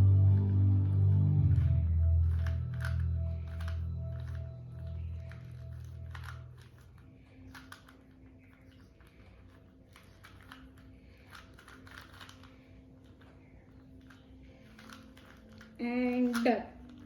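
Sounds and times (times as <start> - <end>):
background music with deep bass: 0.0 - 7.0
puzzle cube clicking: 0.4 - 17.0.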